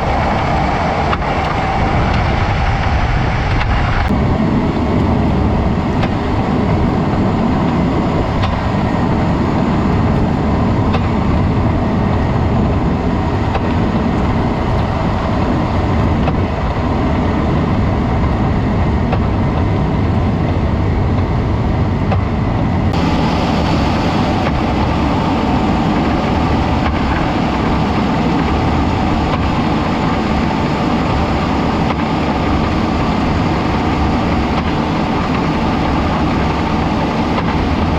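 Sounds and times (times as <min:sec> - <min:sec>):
car engine and road noise: 0:00.0 - 0:37.9.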